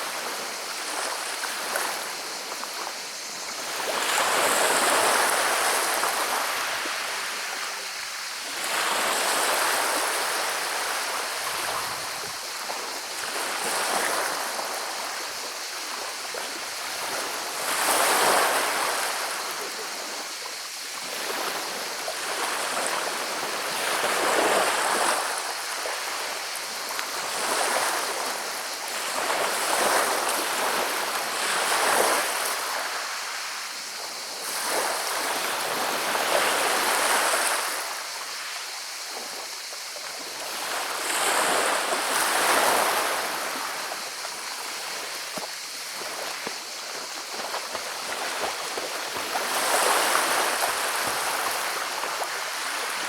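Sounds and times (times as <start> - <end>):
waves rolling pebbles: 0.0 - 53.0.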